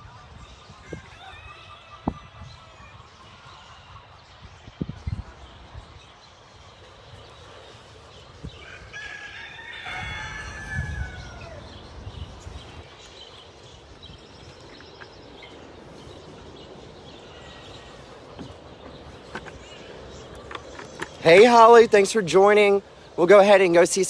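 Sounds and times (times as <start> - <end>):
rooster crowing: 8.6 - 11.9.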